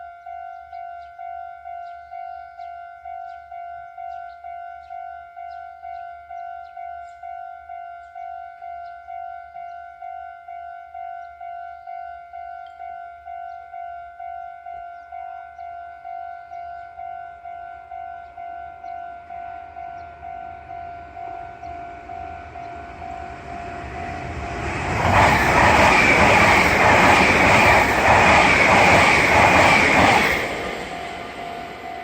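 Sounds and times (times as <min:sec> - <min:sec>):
level crossing warning bell: 0:00.0 - 0:25.0, 0:27.3 - 0:32.0
train passing: 0:16.0 - 0:32.0.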